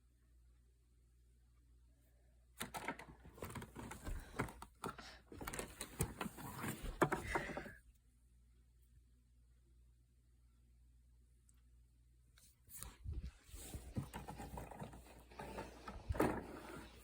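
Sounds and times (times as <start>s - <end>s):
vacuum cleaner parts clattering: 2.6s - 7.8s, 13.6s - 17.0s.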